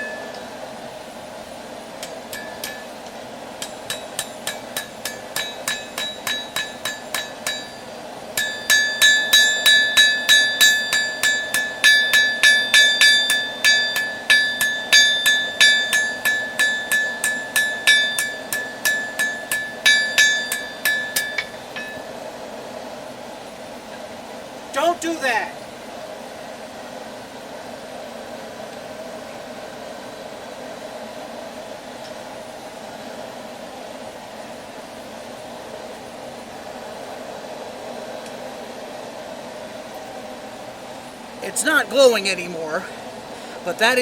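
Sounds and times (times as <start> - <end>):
hammer striking metal on anvil: 2.0 - 3.0, 3.6 - 22.1.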